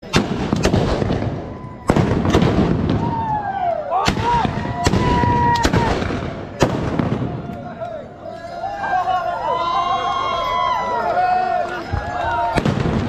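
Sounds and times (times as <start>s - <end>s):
guns firing sharp bangs: 0.0s - 3.2s, 4.0s - 7.4s, 12.6s - 13.0s
crowd voices: 0.0s - 13.0s.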